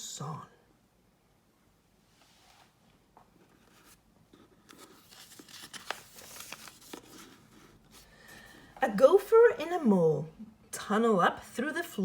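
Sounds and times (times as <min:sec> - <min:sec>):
book page turning: 0:03.4 - 0:08.2
paper rustling and crinkling: 0:03.4 - 0:08.6.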